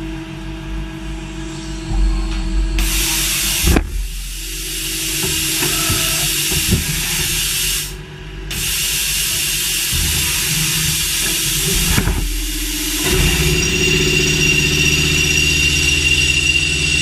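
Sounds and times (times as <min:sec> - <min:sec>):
low machine hum: 0:00.0 - 0:17.0
steady hiss: 0:01.4 - 0:17.0.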